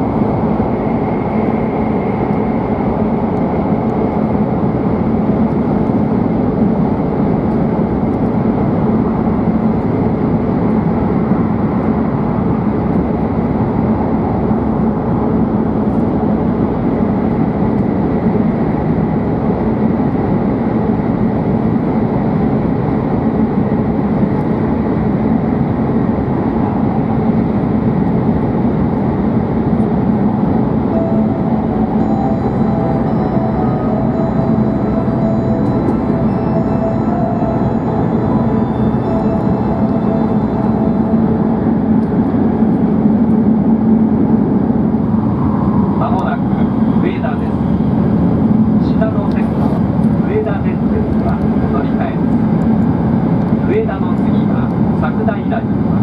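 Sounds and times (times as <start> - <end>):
train interior rumble and rush: 0.0 - 56.0
faint steady whine: 29.7 - 49.4.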